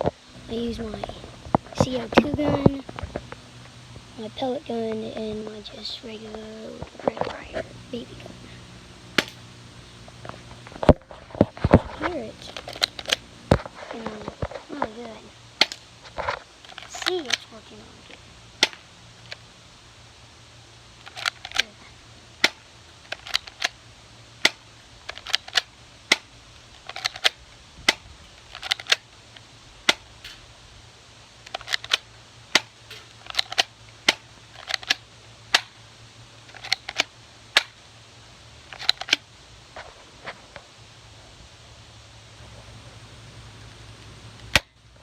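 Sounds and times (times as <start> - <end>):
airsoft pistol firing sharp cracks: 9.1 - 9.5, 18.6 - 18.9, 22.4 - 23.8, 24.4 - 26.4, 29.8 - 30.5, 31.5 - 35.8.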